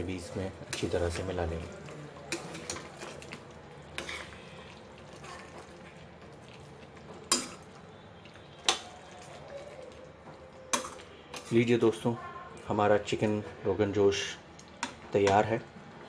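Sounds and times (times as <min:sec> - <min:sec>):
spoon stirring in a pot: 0:00.6 - 0:11.8.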